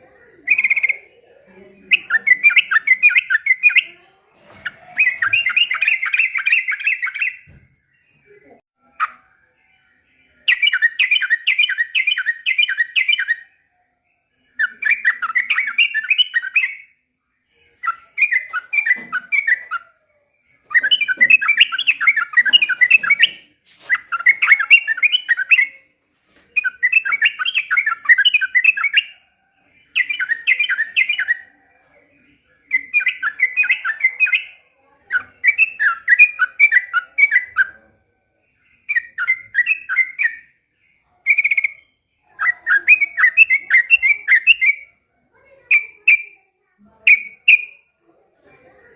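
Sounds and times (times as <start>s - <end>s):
bulbul singing chattering notes: 0.0s - 4.0s, 4.6s - 7.6s, 20.6s - 25.8s.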